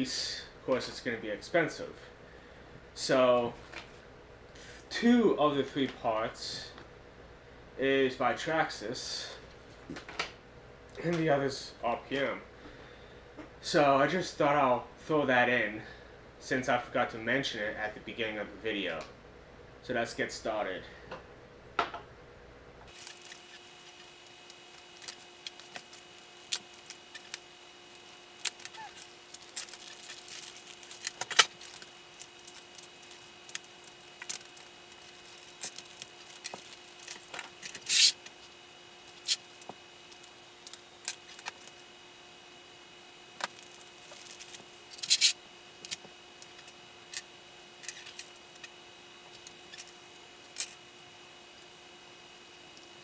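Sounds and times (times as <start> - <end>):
faint electrical hum: 0.0 - 53.0
plastic parts and tools clicking: 22.9 - 38.4.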